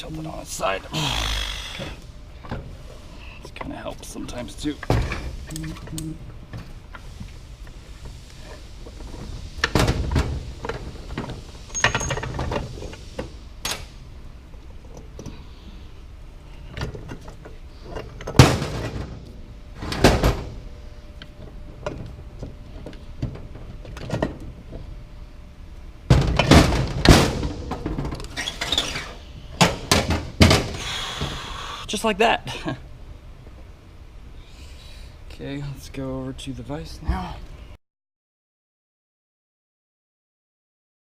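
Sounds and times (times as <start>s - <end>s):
metal parts knocking and clunking: 9.0s - 13.0s.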